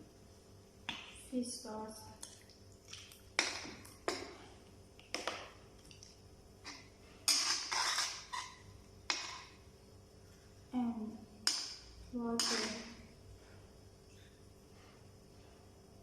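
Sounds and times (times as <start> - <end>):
utensil scraping cookware: 7.3 - 9.5, 12.4 - 12.9.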